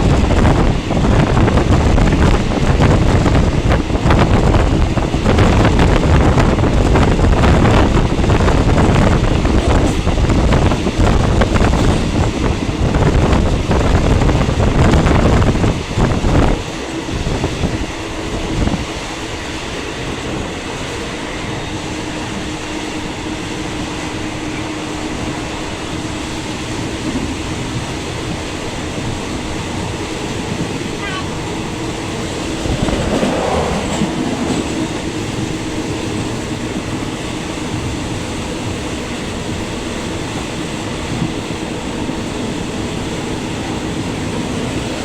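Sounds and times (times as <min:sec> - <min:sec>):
rushing wind: 0:00.0 - 0:45.0
train wheels rumbling on rails: 0:00.0 - 0:45.0.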